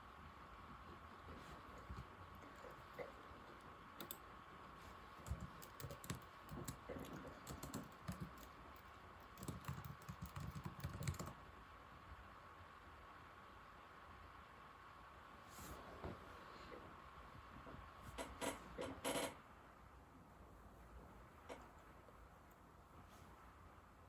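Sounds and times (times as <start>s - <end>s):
laptop keyboard typing: 1.4s - 4.3s, 5.1s - 11.4s.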